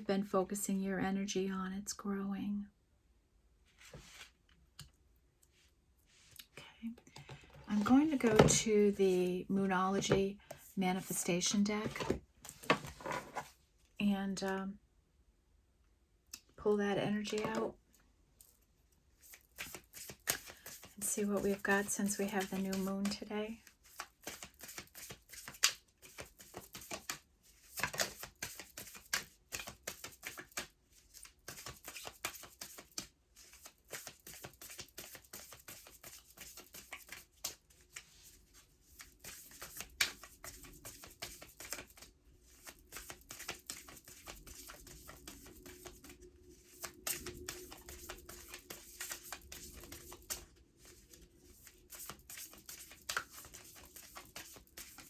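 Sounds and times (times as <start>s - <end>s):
cards being shuffled: 3.8s - 4.3s, 19.2s - 23.2s, 23.8s - 55.0s.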